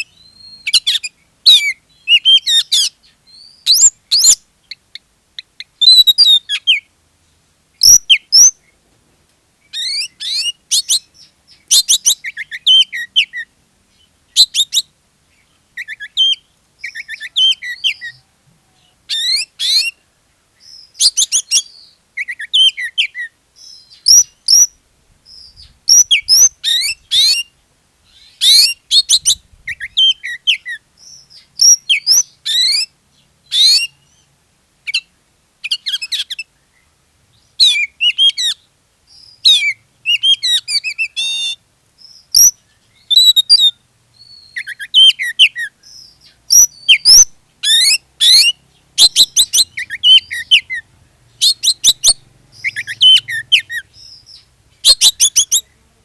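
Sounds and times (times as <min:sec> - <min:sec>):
bird singing whistled phrases: 0:00.0 - 0:04.4, 0:05.6 - 0:06.8, 0:07.8 - 0:08.6, 0:09.7 - 0:13.5, 0:14.4 - 0:14.9, 0:15.8 - 0:18.2, 0:19.1 - 0:20.0, 0:20.6 - 0:27.5, 0:28.1 - 0:32.9, 0:33.5 - 0:34.3, 0:39.2 - 0:55.7.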